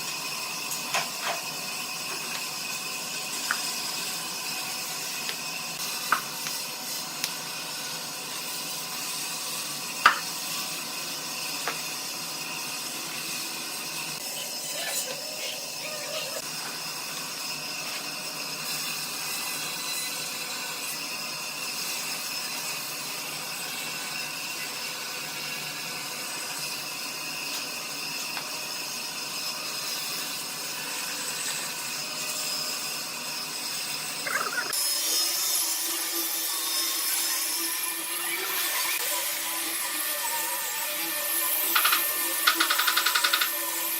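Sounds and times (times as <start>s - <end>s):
power tool working wood: 0.0s - 43.9s.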